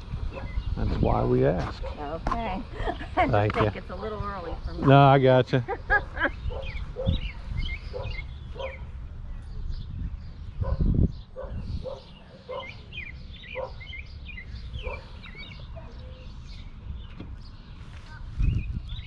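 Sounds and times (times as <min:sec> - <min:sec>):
low rumble on microphone: 0:00.0 - 0:12.2, 0:14.3 - 0:19.0
birds chirping: 0:00.0 - 0:19.0
dogs barking: 0:00.3 - 0:00.6, 0:01.6 - 0:02.2, 0:05.9 - 0:08.9, 0:10.6 - 0:14.1, 0:14.7 - 0:16.3.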